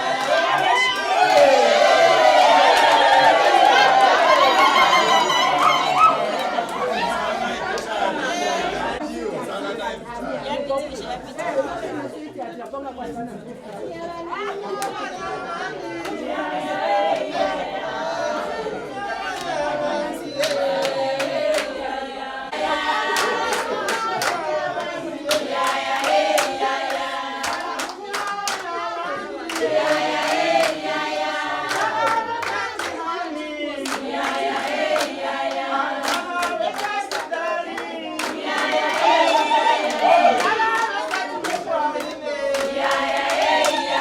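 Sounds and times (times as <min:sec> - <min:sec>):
group singing in unison: 0:00.0 - 0:09.0, 0:14.3 - 0:44.0
hand clapping: 0:23.1 - 0:28.8, 0:31.6 - 0:33.0, 0:33.8 - 0:43.9.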